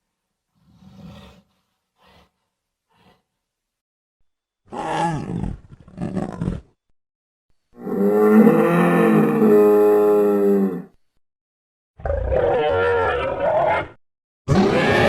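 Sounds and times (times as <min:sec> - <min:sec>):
dinosaur roar: 0:07.8 - 0:11.0, 0:12.0 - 0:15.0
wavering growl: 0:07.8 - 0:11.0.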